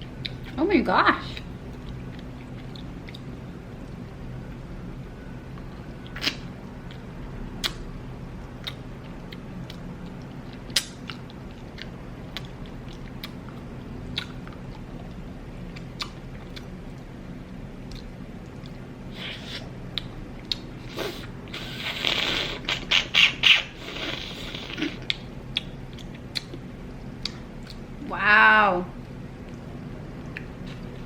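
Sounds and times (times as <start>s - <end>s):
faint low hum: 0.0s - 31.0s
close-miked chewing: 1.3s - 4.6s, 8.6s - 28.0s, 29.0s - 31.0s.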